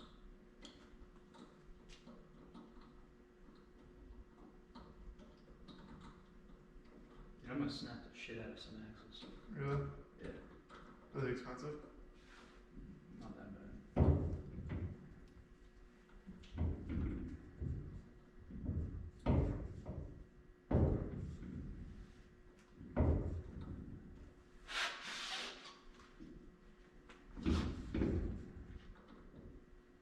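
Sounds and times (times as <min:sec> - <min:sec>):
workshop thumps and knocks: 0:13.9 - 0:15.1, 0:16.4 - 0:21.9, 0:22.8 - 0:24.0, 0:27.4 - 0:28.8.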